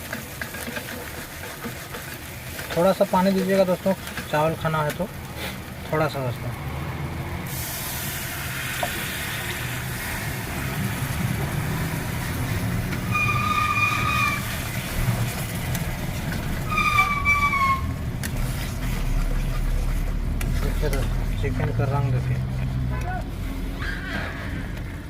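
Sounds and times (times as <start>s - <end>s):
low engine rumble: 4.0s - 25.0s
horn blasts: 13.0s - 14.5s.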